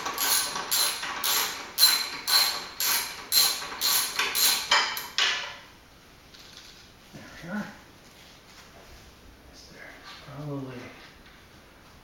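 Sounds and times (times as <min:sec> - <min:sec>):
ratchet wrench rasping: 0:00.0 - 0:04.8.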